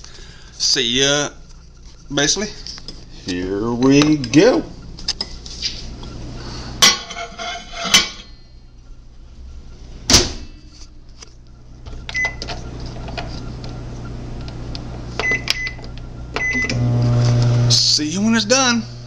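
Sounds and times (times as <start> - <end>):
steady low hum: 0.0 - 19.0
short keypad beep: 16.4 - 16.8.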